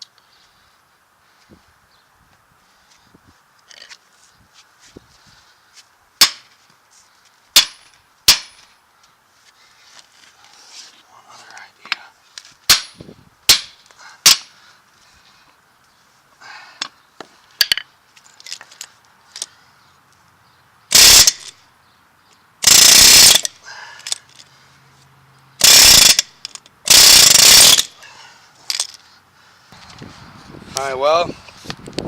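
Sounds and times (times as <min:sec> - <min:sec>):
sharp metal knocks: 0:06.2 - 0:06.5, 0:07.6 - 0:08.8, 0:12.7 - 0:14.5
pneumatic air hammer: 0:07.6 - 0:08.7, 0:12.7 - 0:14.5, 0:20.9 - 0:21.5, 0:22.6 - 0:24.2, 0:25.6 - 0:28.0.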